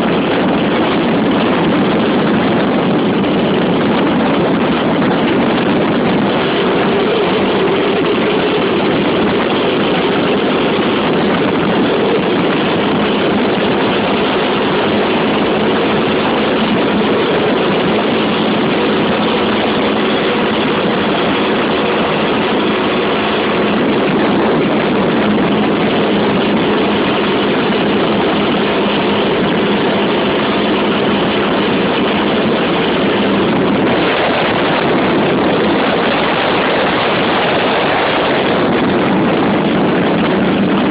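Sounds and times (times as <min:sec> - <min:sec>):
wind rush over microphone: 0:00.0 - 0:40.9.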